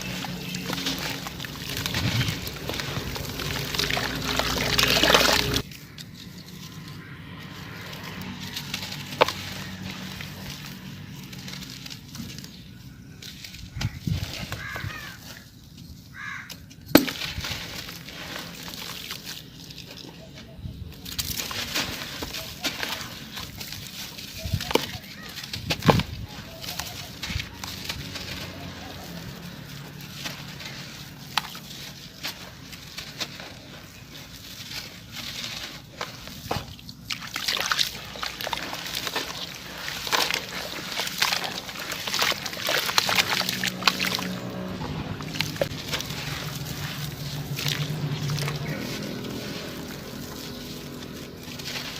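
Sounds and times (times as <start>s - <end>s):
cement chunks crushing: 0.0s - 51.9s
bird cawing: 6.9s - 7.5s, 13.7s - 15.5s, 16.1s - 16.6s.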